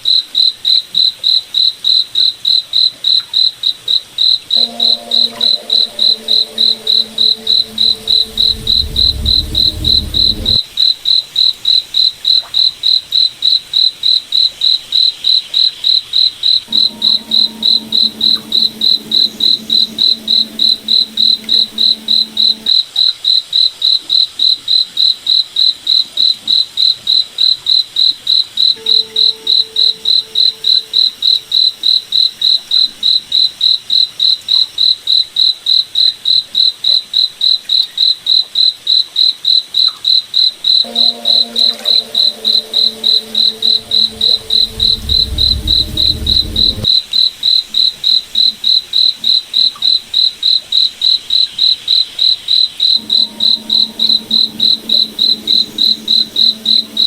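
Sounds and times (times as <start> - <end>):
cricket chirping: 4.2 - 10.6, 12.8 - 22.8, 37.4 - 47.0, 48.4 - 57.0.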